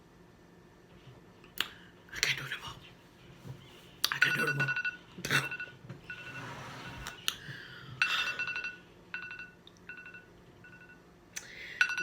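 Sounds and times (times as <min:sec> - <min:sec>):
electronic timer alarm beeping: 0:04.3 - 0:06.5, 0:08.0 - 0:11.0.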